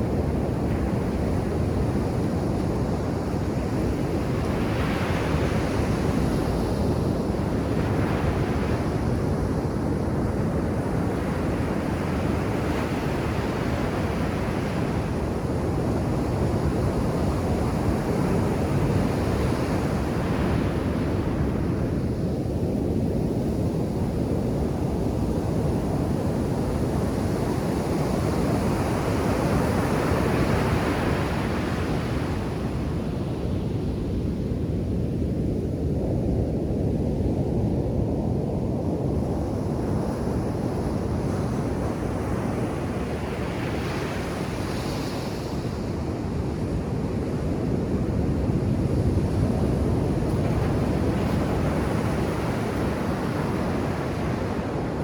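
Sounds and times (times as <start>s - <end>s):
wind rumbling on microphone: 0.0s - 55.0s
waves breaking on beach: 41.3s - 55.0s.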